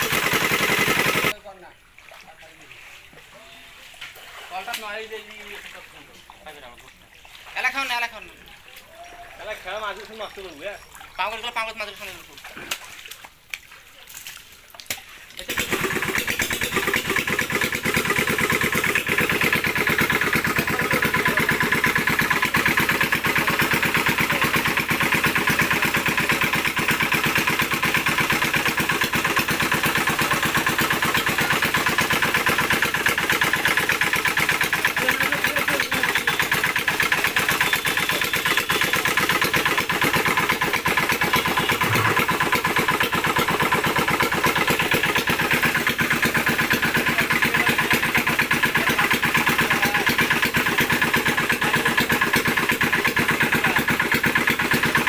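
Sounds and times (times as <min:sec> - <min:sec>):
small engine running steadily: 0:00.0 - 0:01.4, 0:15.4 - 0:55.0.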